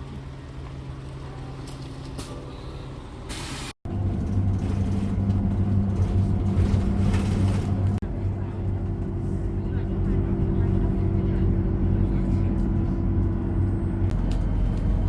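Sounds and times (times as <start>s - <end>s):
engine droning: 3.9s - 15.0s.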